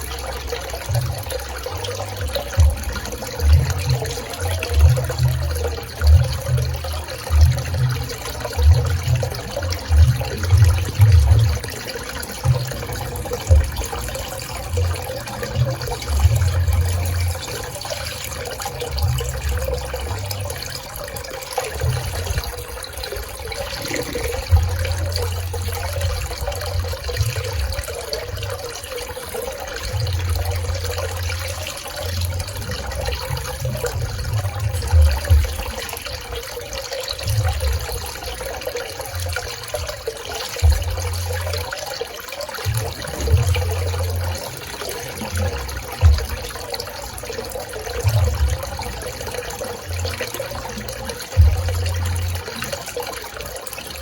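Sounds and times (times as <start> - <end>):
low rumbles: 0.0 - 28.7
pool water splashing: 0.0 - 54.0.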